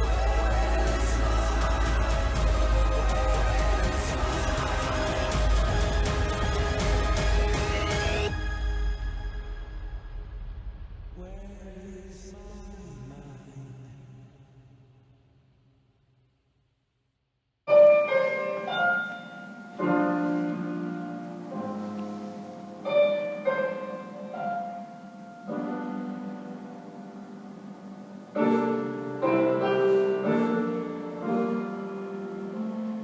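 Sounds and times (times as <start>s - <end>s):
solo piano chords: 17.7s - 33.0s.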